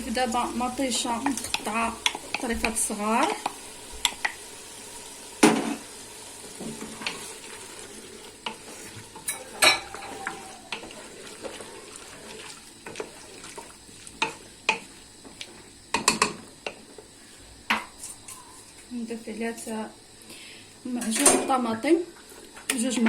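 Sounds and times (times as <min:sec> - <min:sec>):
vegetables sizzling in hot oil: 0:00.0 - 0:23.0
spoon scraping a pot: 0:08.4 - 0:15.0.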